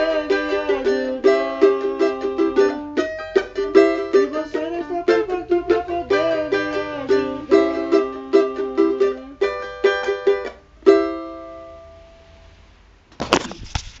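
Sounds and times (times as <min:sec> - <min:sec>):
small guitar plucked and strummed: 0:00.0 - 0:12.2
short clatter: 0:13.1 - 0:14.0.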